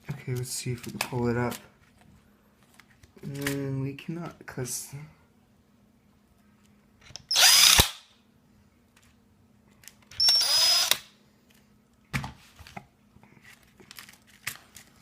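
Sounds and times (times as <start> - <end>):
power drill drilling into plastic: 7.3 - 8.0, 10.2 - 11.1.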